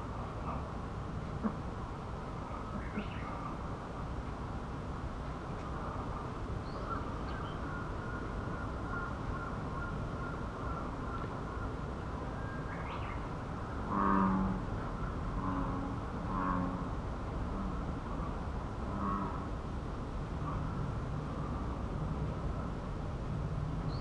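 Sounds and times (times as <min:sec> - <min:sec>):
outdoor background hiss: 0:00.0 - 0:24.0
bullfrog deep call: 0:13.8 - 0:14.7, 0:15.3 - 0:17.8, 0:18.9 - 0:19.5.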